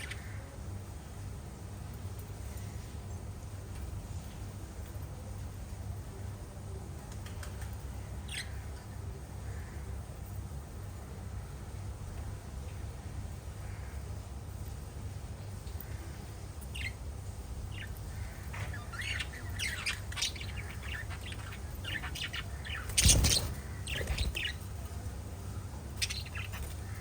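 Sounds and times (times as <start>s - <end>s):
parrots chirping: 0.0s - 0.3s, 17.7s - 24.6s, 26.0s - 27.0s
steady low hum: 0.0s - 27.0s.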